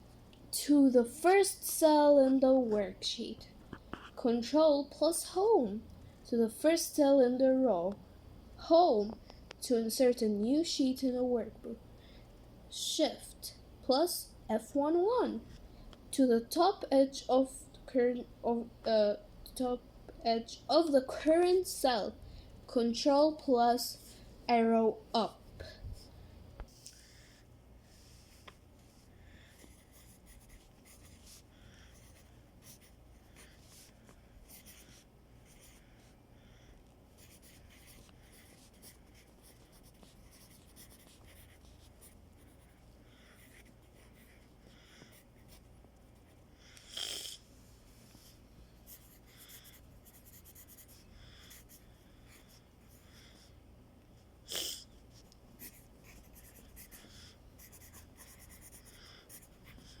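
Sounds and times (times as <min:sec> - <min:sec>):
pencil scratching on paper: 0:29.5 - 0:35.9, 0:37.2 - 0:46.4, 0:48.9 - 0:53.0, 0:55.6 - 1:00.0.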